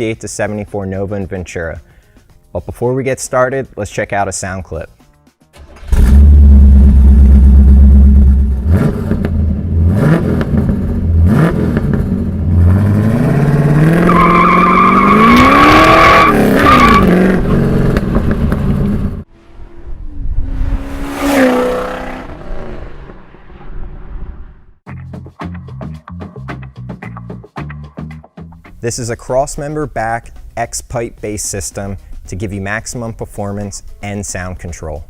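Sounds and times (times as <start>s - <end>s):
car engine idling: 5.6s - 9.9s
engine revving: 5.6s - 24.8s.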